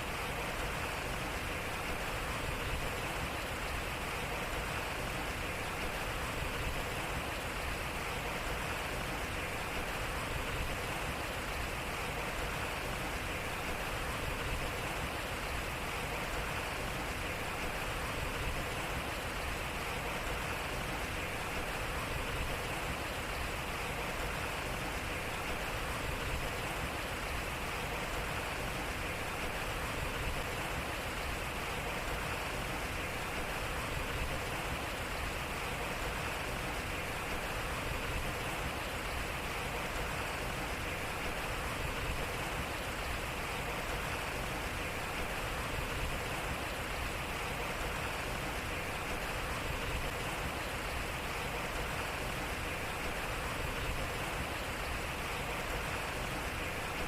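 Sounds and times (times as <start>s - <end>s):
water splashing at waterwheel: 0.0s - 57.0s.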